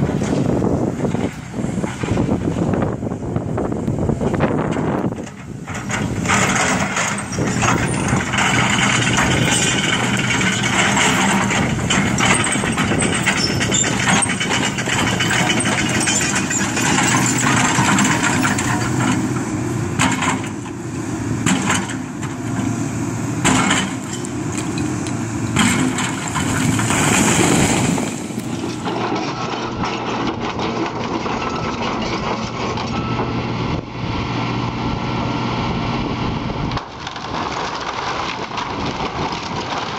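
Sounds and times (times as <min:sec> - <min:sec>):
excavator diesel engine running: 0:00.0 - 0:39.9
debris crunching and cracking: 0:36.7 - 0:39.9.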